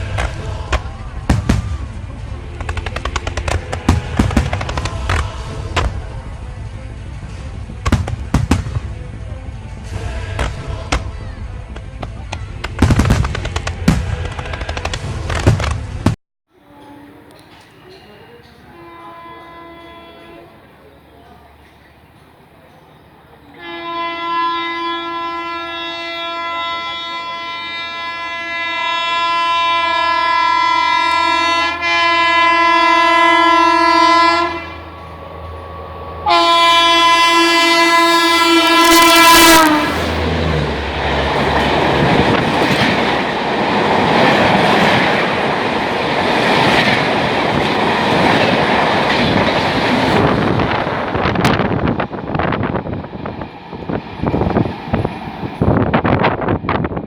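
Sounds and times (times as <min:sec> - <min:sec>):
train passing at high speed: 0:00.0 - 0:57.0
locomotive horn blasts: 0:18.7 - 0:20.6, 0:23.5 - 0:42.7.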